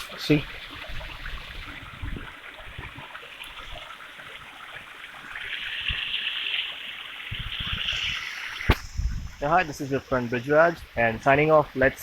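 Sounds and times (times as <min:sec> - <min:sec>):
small waterfall rushing: 0:00.0 - 0:04.2.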